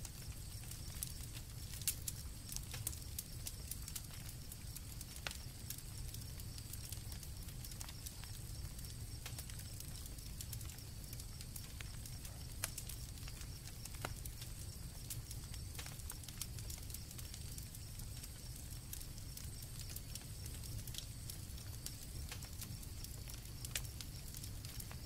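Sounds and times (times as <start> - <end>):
campfire crackling: 0.0 - 25.0
crickets trilling: 0.0 - 25.0.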